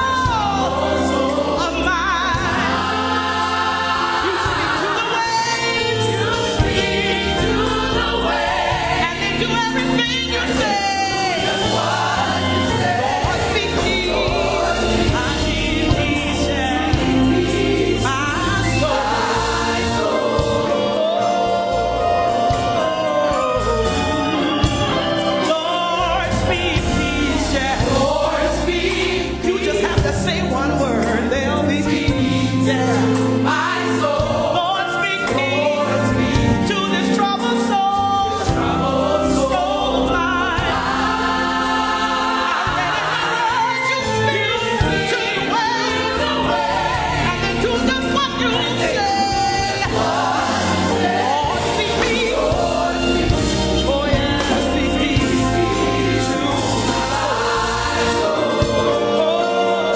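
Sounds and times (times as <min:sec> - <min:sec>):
band with bass and drums: 0:00.0 - 0:34.6
choir singing gospel song: 0:00.0 - 0:59.9.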